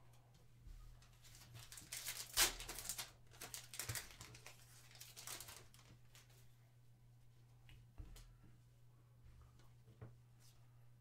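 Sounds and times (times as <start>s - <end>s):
trading cards clicking and crinkling: 1.3s - 6.3s.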